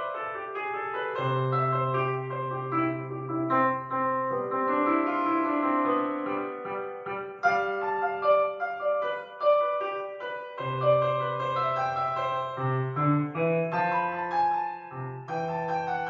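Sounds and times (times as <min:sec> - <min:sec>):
piano music: 0:00.0 - 0:16.0.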